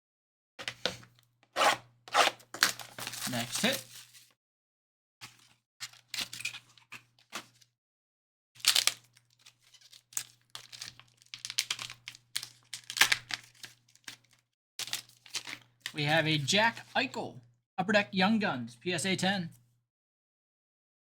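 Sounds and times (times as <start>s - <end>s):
packaging tearing and crinkling: 2.2s - 4.3s, 8.6s - 16.0s.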